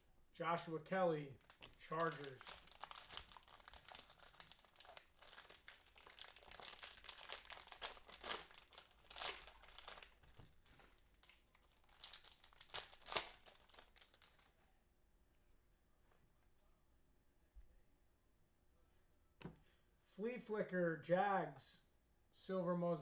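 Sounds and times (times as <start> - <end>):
cellophane wrapper crinkling: 1.4 - 14.6.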